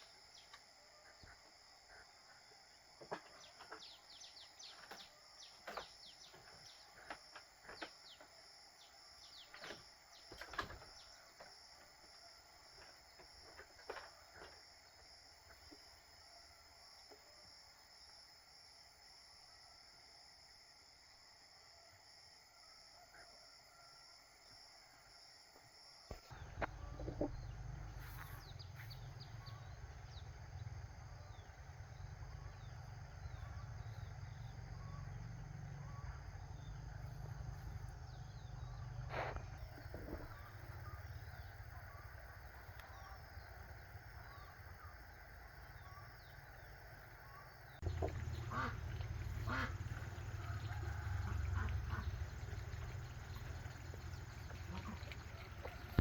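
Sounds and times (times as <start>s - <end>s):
low steady rumble: 26.3s - 56.0s
ducks calling: 47.8s - 56.0s.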